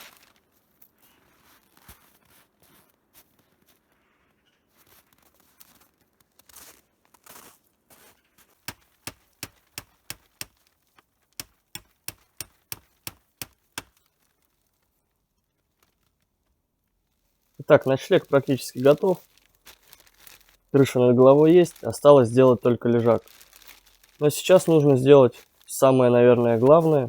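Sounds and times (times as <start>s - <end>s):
plastic sheeting rustling: 12.8s - 27.0s.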